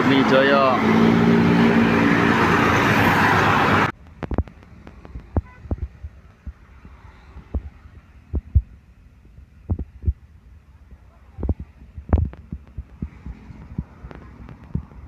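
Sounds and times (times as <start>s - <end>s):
passing bus road noise: 0.0s - 9.7s, 11.7s - 15.0s
low thumps and knocks: 4.0s - 10.3s, 11.4s - 15.0s.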